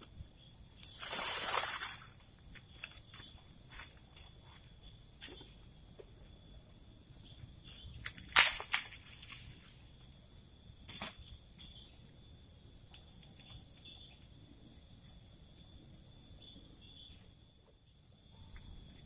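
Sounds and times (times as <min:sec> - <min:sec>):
insects trilling: 0:00.0 - 0:19.0
sharp cracks or knocks: 0:08.1 - 0:09.0.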